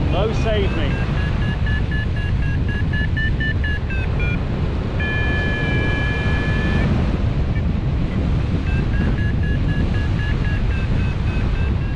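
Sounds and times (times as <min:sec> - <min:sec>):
wind rushing over microphone: 0:00.0 - 0:11.9
variometer beeping: 0:00.1 - 0:11.9.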